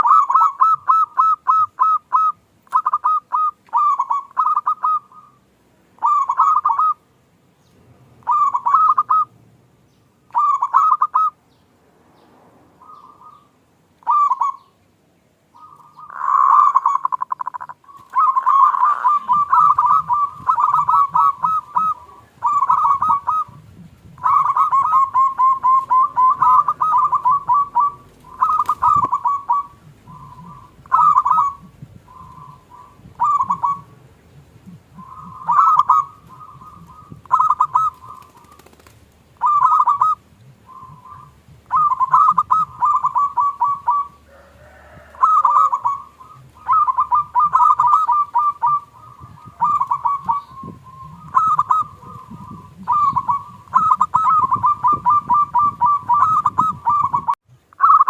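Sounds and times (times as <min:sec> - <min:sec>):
dove cooing: 0:00.0 - 0:07.1, 0:08.2 - 0:09.4, 0:10.3 - 0:11.4, 0:12.8 - 0:14.8, 0:15.5 - 0:58.0.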